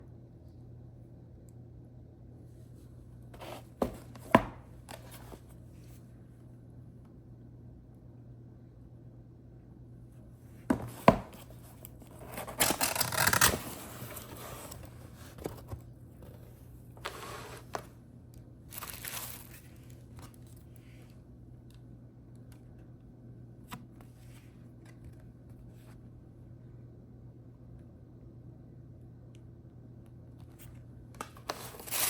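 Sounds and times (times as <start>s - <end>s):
packaging tearing: 12.3s - 14.3s.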